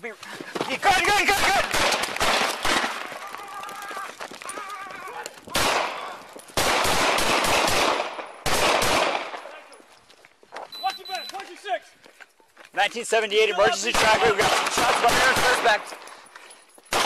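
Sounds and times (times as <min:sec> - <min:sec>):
rapid gunfire: 0:01.4 - 0:03.0, 0:05.6 - 0:06.0, 0:06.6 - 0:09.3, 0:13.9 - 0:15.9
people shouting: 0:02.8 - 0:06.3, 0:13.4 - 0:15.1.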